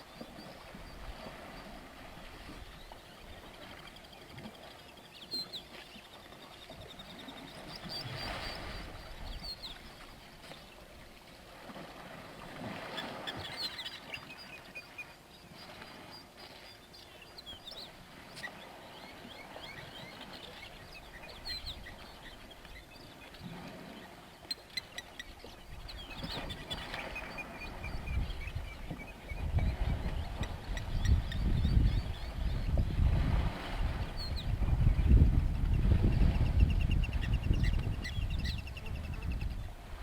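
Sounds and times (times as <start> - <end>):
wild birds chirping: 12.8 - 32.7.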